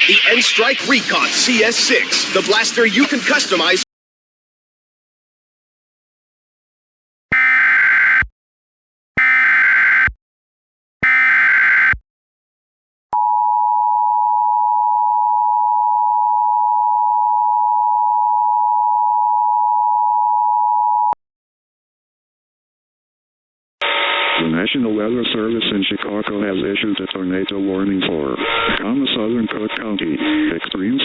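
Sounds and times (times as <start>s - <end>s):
warbling data tone bursts: 0.0s - 1.1s.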